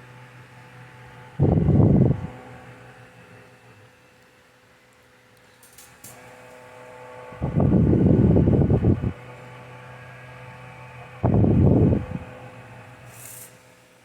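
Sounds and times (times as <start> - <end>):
desk fan humming: 0.0 - 5.5, 6.2 - 14.0
wind rumble on microphone: 1.4 - 2.4, 7.3 - 9.2, 11.2 - 12.4.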